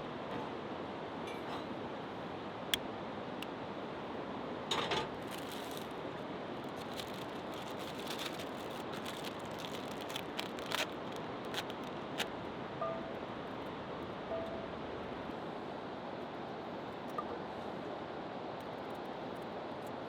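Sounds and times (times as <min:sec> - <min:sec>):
food packages rustling: 0:05.1 - 0:12.3
cooking gear clicking and rattling: 0:05.2 - 0:06.0, 0:06.7 - 0:12.3.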